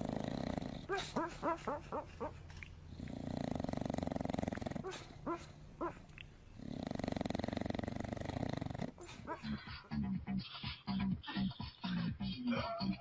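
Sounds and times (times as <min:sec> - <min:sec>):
rattling snores: 0:00.0 - 0:01.0, 0:02.9 - 0:05.2, 0:06.6 - 0:09.1.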